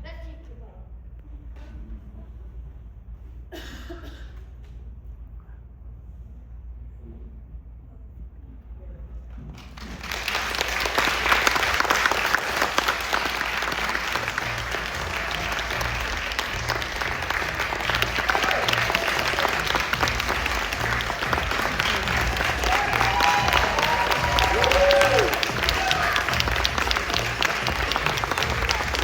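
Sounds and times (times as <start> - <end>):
audience applauding: 9.6 - 29.0.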